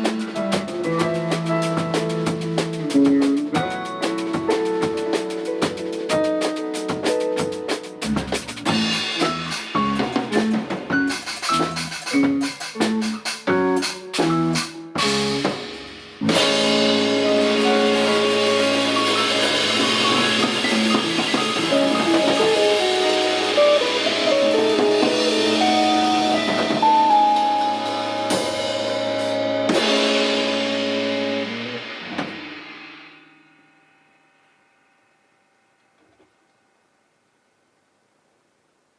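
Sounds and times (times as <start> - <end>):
instrumental band chords: 0.0 - 33.5.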